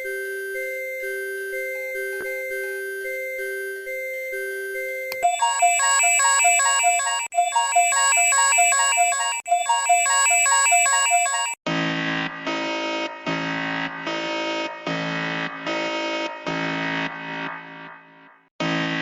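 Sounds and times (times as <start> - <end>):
hi-lo alarm tone: 0.0 - 11.6.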